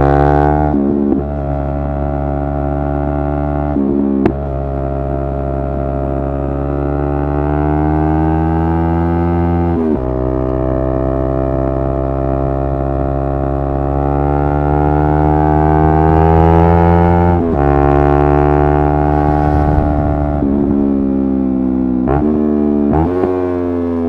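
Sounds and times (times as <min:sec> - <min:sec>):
motorcycle engine accelerating: 0:13.4 - 0:24.0.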